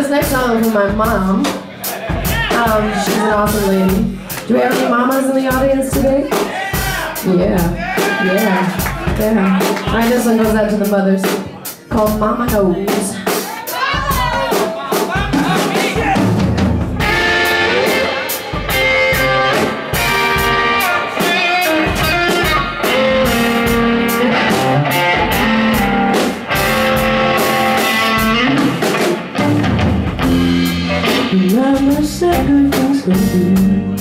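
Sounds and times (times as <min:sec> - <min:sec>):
drum kit: 0:00.0 - 0:34.0
electric guitar: 0:17.0 - 0:34.0.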